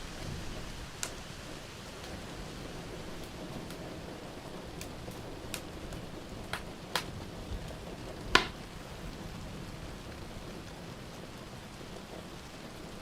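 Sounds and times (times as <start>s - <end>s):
fire popping: 0.0s - 8.8s
rain hissing: 0.0s - 13.0s
wood fire crackling: 0.0s - 13.0s.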